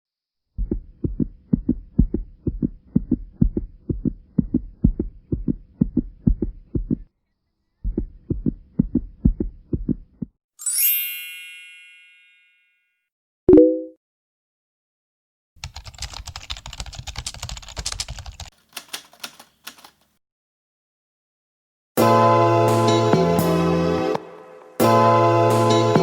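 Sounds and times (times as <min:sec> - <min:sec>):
rapid low thumps: 0:00.6 - 0:07.1, 0:07.8 - 0:10.3.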